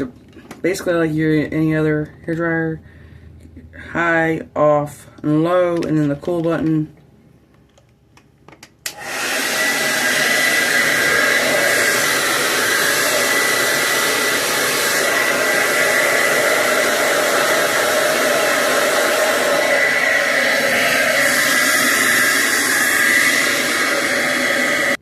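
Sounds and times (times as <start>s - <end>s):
hair dryer switch click: 8.8s - 9.2s
hair dryer running: 8.8s - 25.0s.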